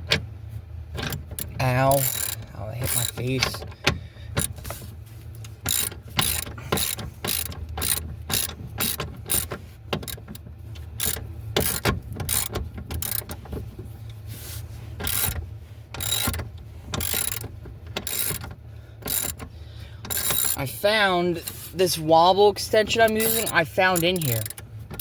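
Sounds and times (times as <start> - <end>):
low steady hum: 0.0 - 25.0
socket ratchet clicking: 1.0 - 4.7, 5.4 - 10.4, 11.0 - 13.4, 15.0 - 15.4, 16.0 - 20.6, 23.2 - 25.0.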